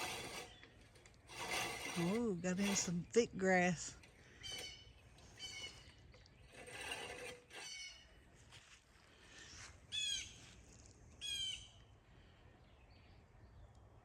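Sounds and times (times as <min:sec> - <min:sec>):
birds squawking: 0:04.2 - 0:06.1.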